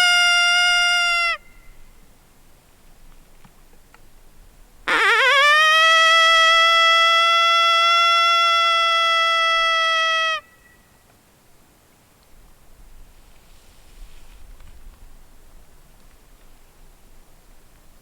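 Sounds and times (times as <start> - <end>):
coyote howl call: 4.9 - 10.5.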